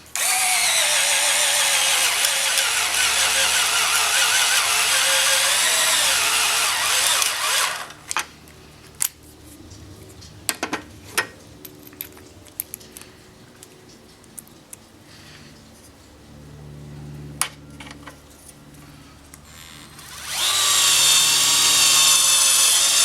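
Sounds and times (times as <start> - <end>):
cordless screwdriver motor whine: 0.0 - 8.1, 19.5 - 23.0
clicks and knocks of handled screws: 10.6 - 14.9.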